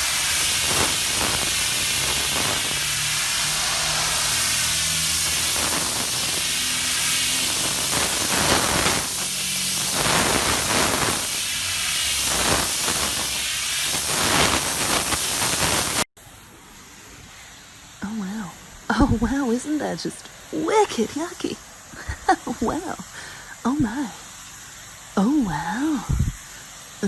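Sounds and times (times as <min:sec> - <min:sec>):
pressure washer spraying: 0:00.0 - 0:16.1.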